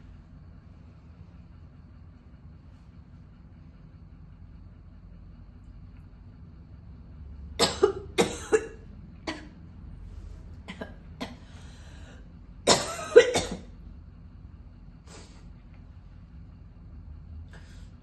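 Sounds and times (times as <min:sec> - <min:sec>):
woman coughing: 0:07.6 - 0:09.6, 0:10.7 - 0:11.5, 0:12.7 - 0:13.7.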